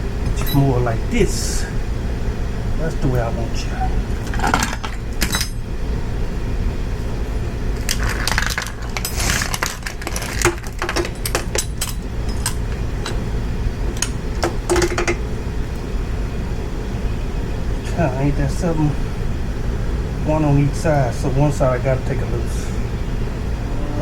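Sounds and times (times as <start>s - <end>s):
low background hum: 0.0s - 24.0s
metallic clinks of tools: 0.3s - 0.7s.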